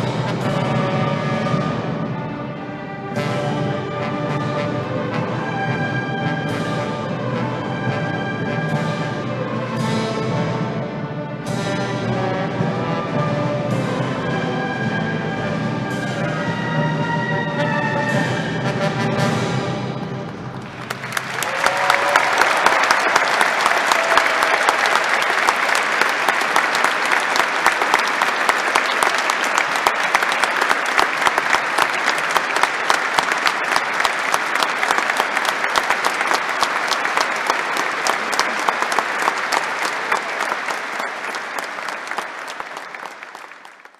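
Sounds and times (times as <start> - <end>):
audience applauding: 20.6 - 43.9.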